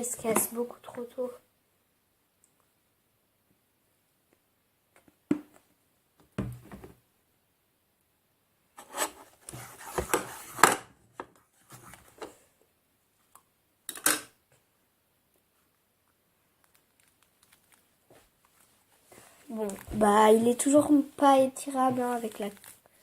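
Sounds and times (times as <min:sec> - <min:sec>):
container scraping and rubbing: 0:08.8 - 0:10.7.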